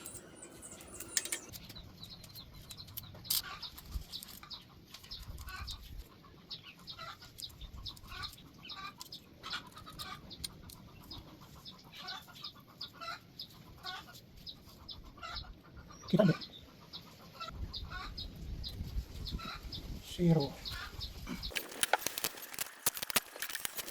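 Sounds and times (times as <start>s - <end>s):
birds chirping: 0.0s - 22.6s
sharp clicks: 21.5s - 23.9s.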